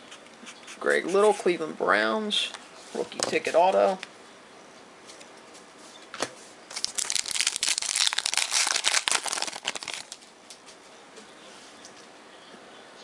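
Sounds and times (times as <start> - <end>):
foil wrapper tearing and crinkling: 6.7 - 10.3.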